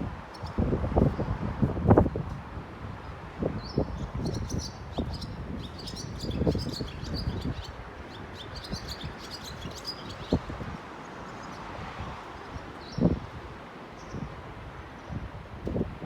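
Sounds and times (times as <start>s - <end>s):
wind buffeting microphone: 0.0s - 10.9s, 11.7s - 16.0s
swallow twittering chirps: 3.7s - 10.5s.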